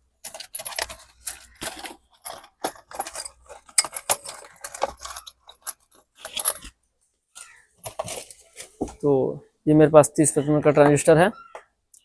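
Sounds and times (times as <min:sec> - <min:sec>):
metal parts clinking and rattling: 0:00.2 - 0:06.8, 0:07.4 - 0:08.4.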